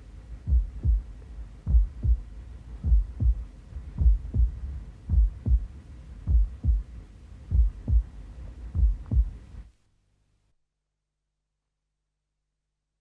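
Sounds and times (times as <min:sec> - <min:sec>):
slow heartbeat thumps: 0:00.4 - 0:09.4.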